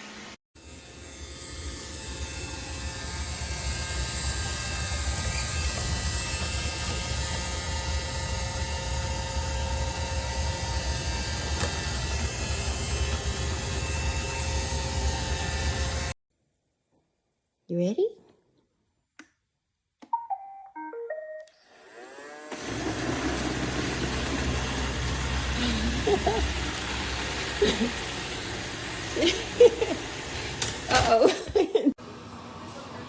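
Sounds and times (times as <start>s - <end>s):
machine running with deep rumble: 22.6s - 30.6s.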